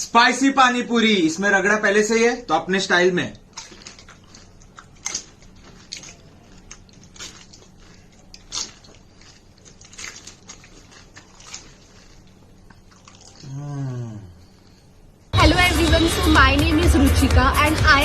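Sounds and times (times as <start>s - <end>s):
crisp shells crunching when chewed: 3.4s - 13.6s
person humming mmm: 13.2s - 14.8s.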